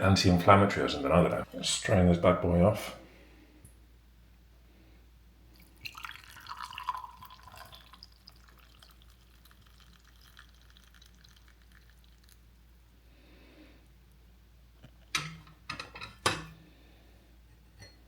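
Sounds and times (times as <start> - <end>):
tea pouring into a cup: 5.6 - 12.8
faint drips from strainer: 5.6 - 14.0.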